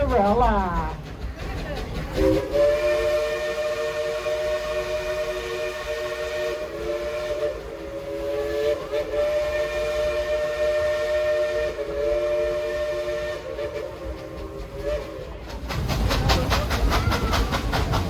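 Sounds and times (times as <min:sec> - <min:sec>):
locomotive steam whistle: 0:02.2 - 0:15.4.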